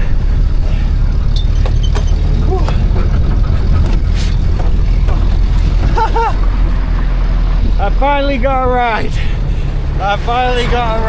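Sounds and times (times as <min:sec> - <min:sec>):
truck engine and road rumble: 0:00.0 - 0:11.0.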